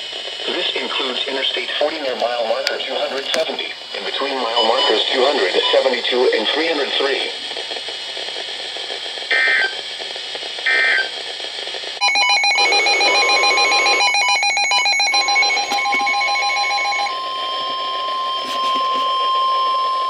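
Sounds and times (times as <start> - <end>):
rapid electronic beeping: 4.0 - 7.3, 12.0 - 19.4
digital data tone bursts: 4.4 - 6.8, 12.0 - 19.7
steady warning alarm tone: 4.4 - 6.8, 12.0 - 20.0.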